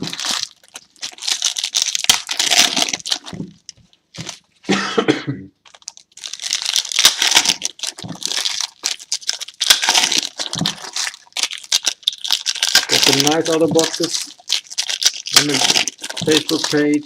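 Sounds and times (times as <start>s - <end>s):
foil wrappers crinkling and tearing: 0.0s - 4.5s, 5.6s - 17.0s
person coughing: 4.7s - 5.6s.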